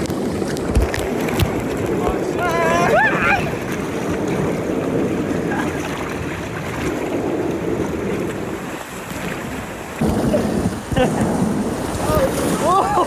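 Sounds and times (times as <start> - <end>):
rushing water: 0.0 - 13.0
wind buffeting microphone: 0.0 - 13.0.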